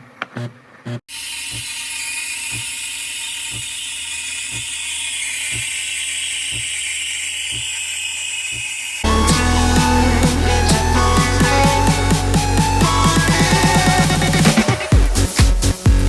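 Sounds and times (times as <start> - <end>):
louder electronic track: 9.0 - 16.0
soft electronic music: 9.0 - 16.0
light kick drum: 15.0 - 16.0.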